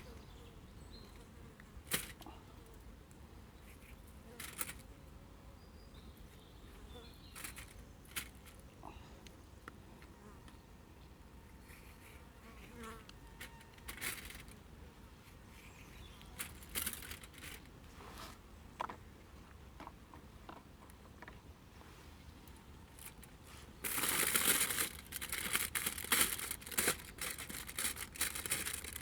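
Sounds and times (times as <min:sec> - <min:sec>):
short rustles: 0:23.0 - 0:29.0.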